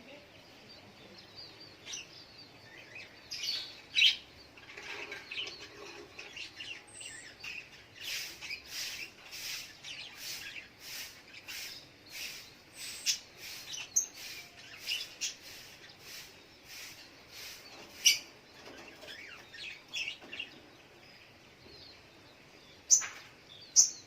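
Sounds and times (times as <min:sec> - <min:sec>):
bird sharp chirps: 0:01.3 - 0:20.3.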